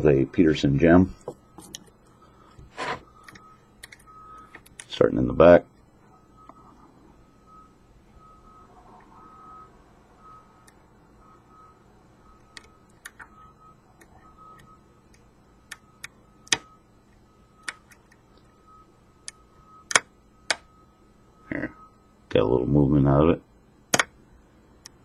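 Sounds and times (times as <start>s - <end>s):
faint repeating beep: 3.0s - 15.0s, 18.4s - 22.6s.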